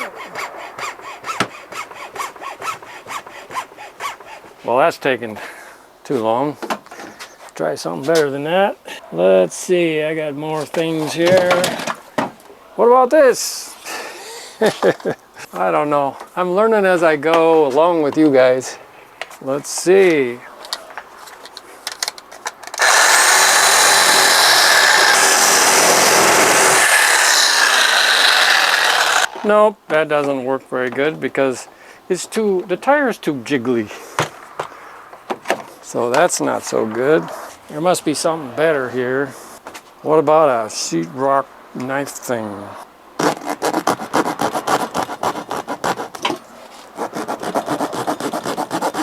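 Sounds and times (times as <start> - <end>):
power tool cutting tire: 0.0 - 4.5, 22.7 - 29.4
saw blade sawing rubber tyre: 0.0 - 4.7, 22.8 - 29.6, 43.2 - 49.0.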